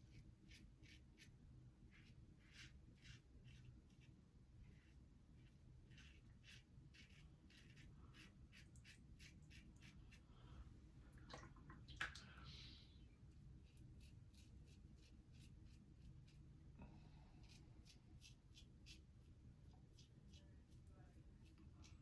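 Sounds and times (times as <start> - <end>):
razor scraping stubble: 1.9 - 4.1, 4.7 - 10.2, 13.7 - 16.4.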